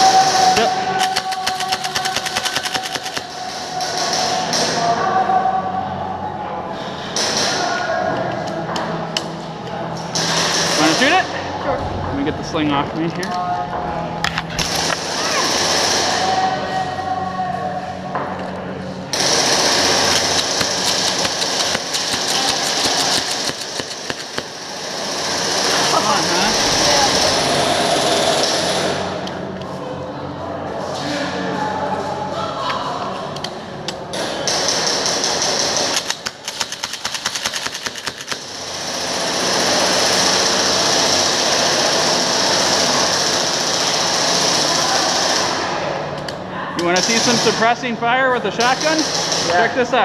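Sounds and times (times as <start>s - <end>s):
airsoft gun full-auto burst: 0.0s - 4.7s, 14.6s - 16.5s, 19.2s - 29.0s, 34.5s - 45.7s, 47.0s - 47.6s, 48.7s - 49.7s
loud steady noise: 0.0s - 32.4s, 33.2s - 50.0s.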